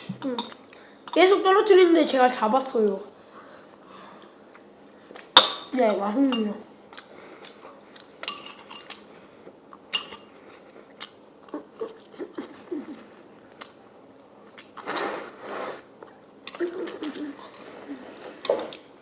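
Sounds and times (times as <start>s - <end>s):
cutlery clinking against dish: 8.2s - 9.0s, 9.9s - 10.3s.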